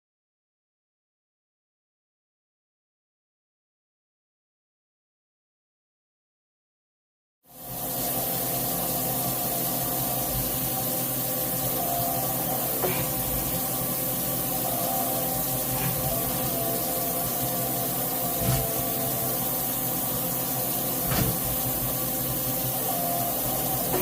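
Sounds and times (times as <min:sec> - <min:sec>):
faint machine whine: 0:07.5 - 0:24.0
milling machine hiss: 0:07.5 - 0:24.0.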